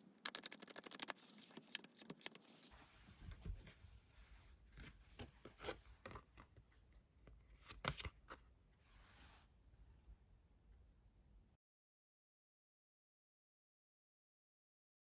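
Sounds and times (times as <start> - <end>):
cards sliding rustle: 0.3 - 2.8.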